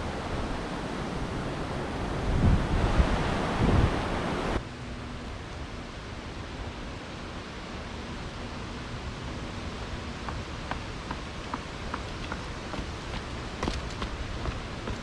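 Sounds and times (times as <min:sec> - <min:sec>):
strong wind on microphone: 0:00.0 - 0:04.6.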